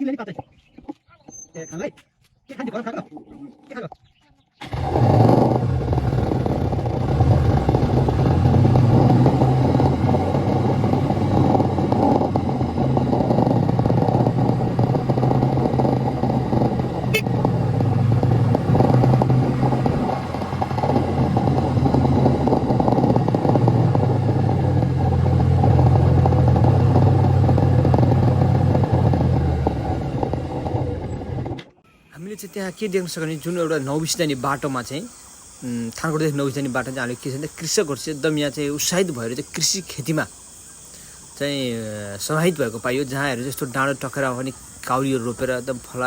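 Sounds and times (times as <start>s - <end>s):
road and wind noise: 4.6s - 31.8s
vehicle engine hum: 4.6s - 46.0s.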